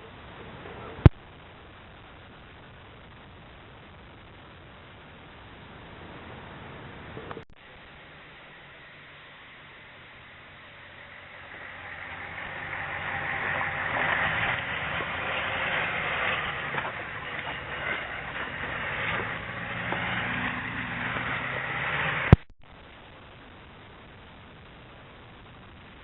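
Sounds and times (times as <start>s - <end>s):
low engine hum: 5.4s - 22.5s
vehicle rushing noise: 8.3s - 22.5s.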